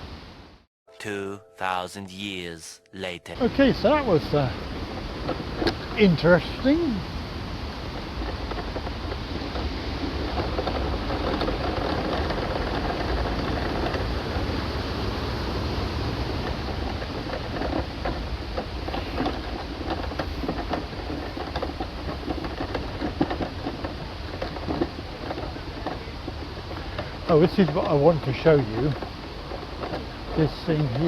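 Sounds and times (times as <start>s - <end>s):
light ticks and patters: 16.5s - 31.0s.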